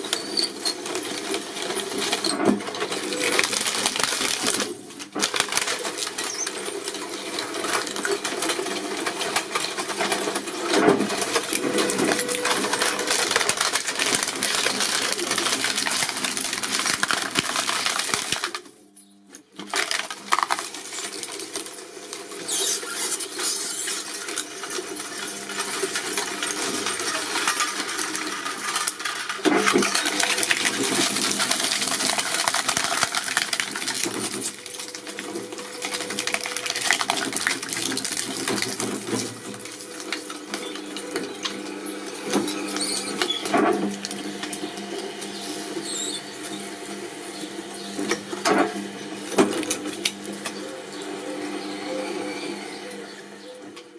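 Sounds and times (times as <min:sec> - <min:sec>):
machine clicking and clattering: 0:00.0 - 0:18.7, 0:19.6 - 0:41.6
machine hum: 0:01.2 - 0:53.9.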